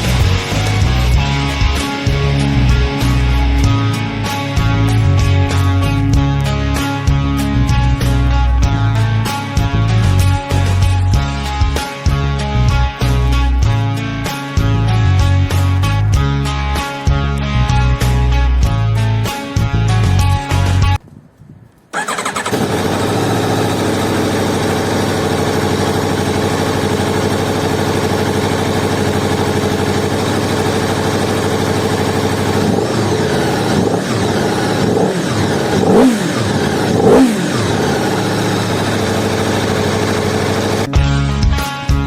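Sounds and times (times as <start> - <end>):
motorcycle engine revving high: 0.0 - 7.4, 21.9 - 41.3.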